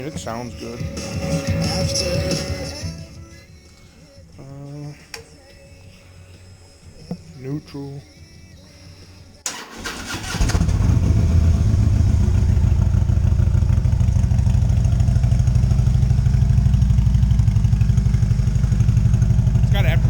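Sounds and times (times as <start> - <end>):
motorcycle engine cranking and idling: 9.4 - 20.0.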